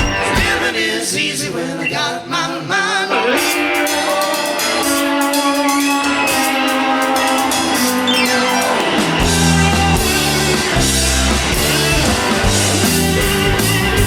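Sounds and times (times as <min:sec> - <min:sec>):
live rock band playing: 0:00.0 - 0:00.8, 0:03.3 - 0:14.0
heavy bass notes: 0:04.3 - 0:14.0.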